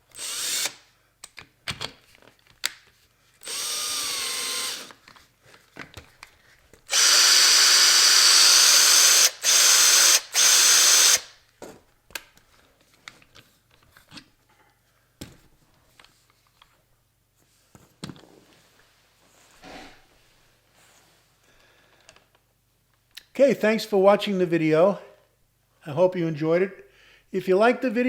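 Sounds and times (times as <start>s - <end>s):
power drill running: 0.0s - 0.8s, 3.4s - 4.9s, 6.9s - 11.3s
clicks and knocks of parts handled: 1.2s - 3.1s, 4.9s - 6.8s, 11.5s - 16.8s.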